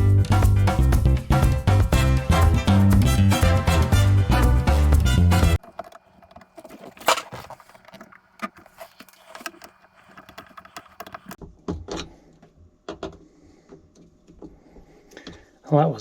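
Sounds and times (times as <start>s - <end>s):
hands working on plastic parts: 5.6s - 15.4s.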